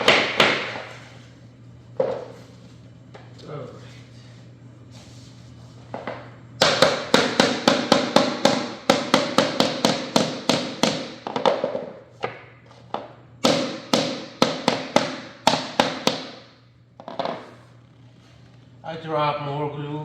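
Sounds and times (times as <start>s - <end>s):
hammer tapping laminate plank: 6.6s - 11.7s, 13.4s - 16.4s.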